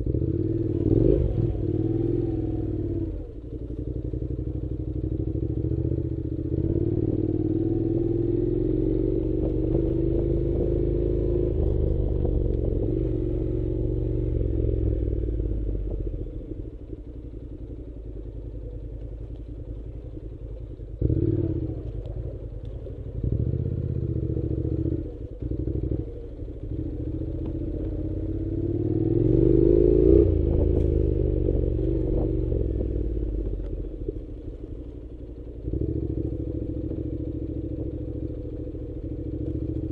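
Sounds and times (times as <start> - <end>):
engine revving: 0.0 - 3.3, 21.0 - 22.4, 23.2 - 34.4.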